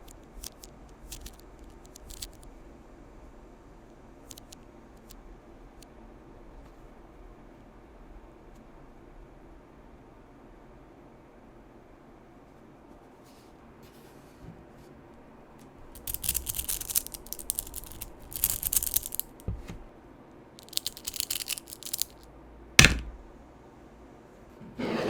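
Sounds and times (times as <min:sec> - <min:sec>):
magnetic balls clicking together: 0:00.0 - 0:02.4, 0:04.3 - 0:05.1, 0:16.0 - 0:19.5, 0:20.6 - 0:22.2
sharp knock: 0:22.8 - 0:23.2.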